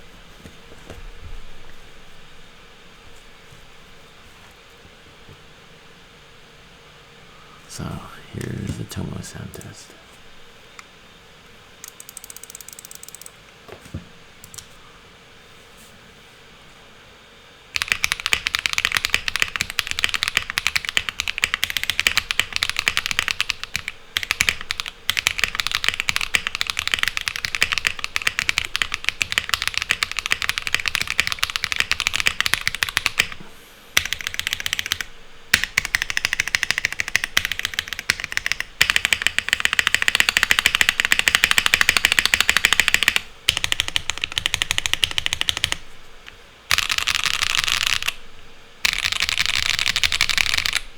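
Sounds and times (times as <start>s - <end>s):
fast typing on mechanical keyboard: 11.8s - 13.3s, 17.8s - 33.4s, 34.0s - 45.8s, 46.7s - 48.2s, 48.8s - 50.9s.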